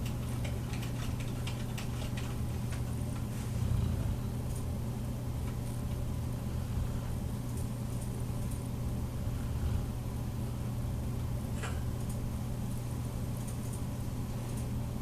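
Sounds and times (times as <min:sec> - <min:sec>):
low rumbling snore: 0:03.3 - 0:04.6, 0:09.1 - 0:10.6.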